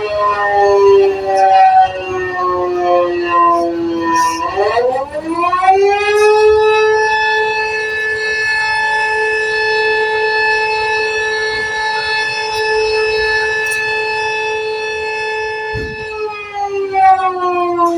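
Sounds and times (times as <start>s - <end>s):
tornado warning siren wailing: 0.0s - 17.9s.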